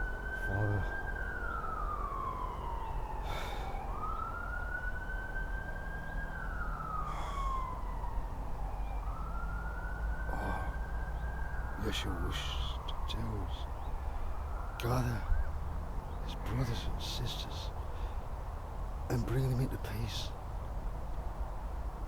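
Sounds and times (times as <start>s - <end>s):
siren wailing: 0.0s - 13.6s.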